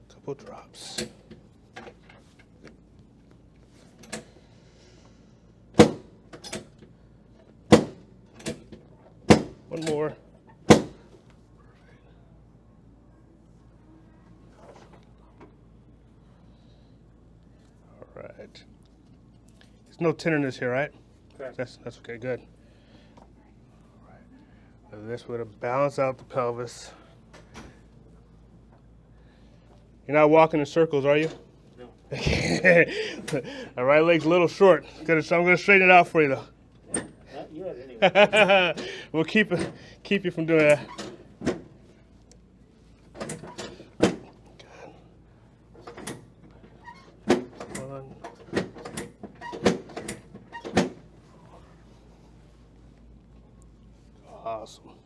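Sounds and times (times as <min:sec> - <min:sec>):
steady low hum: 0:00.0 - 0:55.0
drop table clunk: 0:05.8 - 0:06.2, 0:10.7 - 0:11.1.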